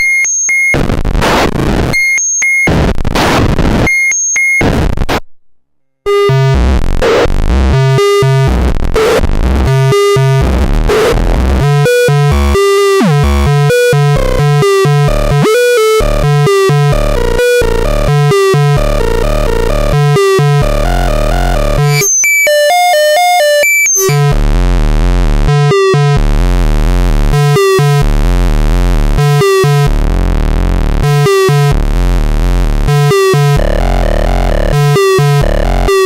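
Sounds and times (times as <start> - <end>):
high-pitched electronic beeping: 0.0 - 0.8, 2.0 - 2.7, 3.9 - 4.6, 7.8 - 24.3
harsh buzzy electronic tones: 0.0 - 5.2, 6.0 - 24.8, 25.4 - 26.2, 27.3 - 28.0, 29.2 - 30.0, 31.0 - 31.8, 32.8 - 36.0.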